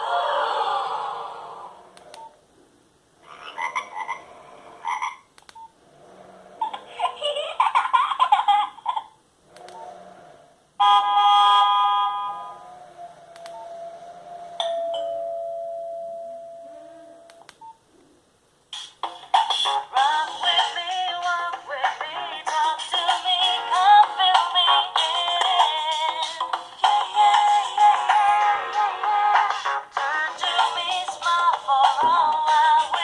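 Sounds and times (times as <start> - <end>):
clicks: 2.0 - 2.4, 5.4 - 5.7, 9.5 - 9.8, 13.3 - 13.7
buzzy tone: 9.6 - 14.6.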